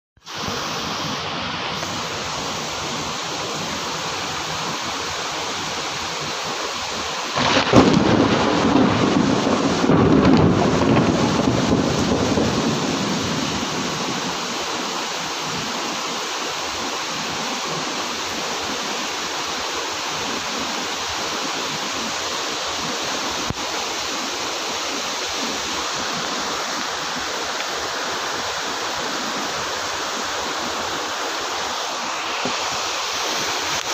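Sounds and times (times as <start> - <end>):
heavy rain falling: 0.2 - 33.9
thunder rumbling: 7.3 - 14.6.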